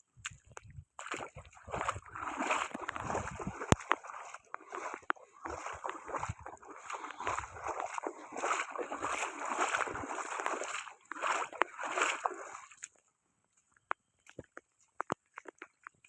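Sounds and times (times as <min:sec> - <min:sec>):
water splashing and sloshing: 0:00.0 - 0:16.0.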